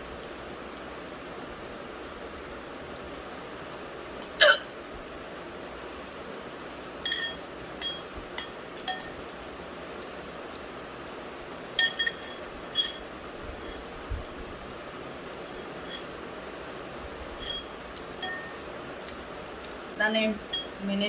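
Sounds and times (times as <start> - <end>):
person hiccuping: 4.4 - 4.7
light ringing clinks: 7.0 - 9.2, 11.8 - 13.9, 15.4 - 16.1, 17.4 - 18.6, 20.5 - 20.8.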